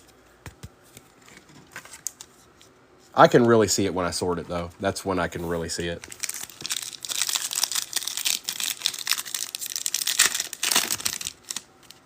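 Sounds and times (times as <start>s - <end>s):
foil wrappers crinkling and tearing: 5.8s - 12.0s.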